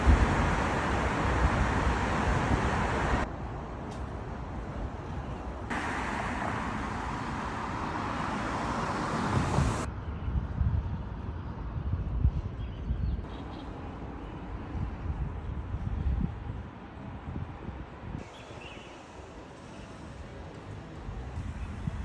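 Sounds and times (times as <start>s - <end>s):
traffic rumble: 0.0s - 10.0s, 13.2s - 22.0s.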